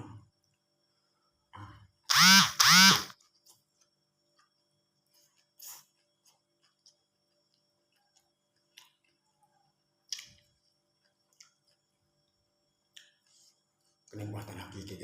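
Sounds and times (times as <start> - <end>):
eating clicks and crunches: 5.2 - 9.4, 10.0 - 12.0.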